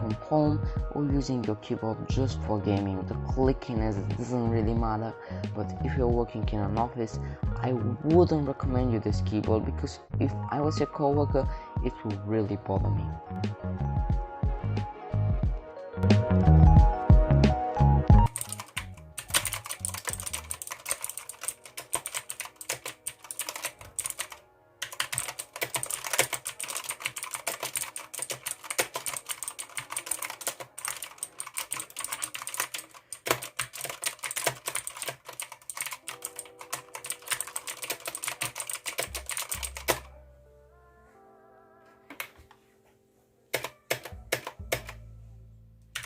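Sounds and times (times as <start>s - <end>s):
mechanical keyboard typing: 18.2s - 40.1s, 43.5s - 45.0s.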